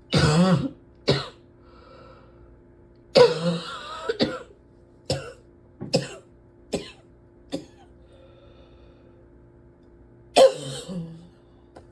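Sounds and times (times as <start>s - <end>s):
person coughing: 0.1s - 1.4s, 3.2s - 7.9s, 10.4s - 11.3s.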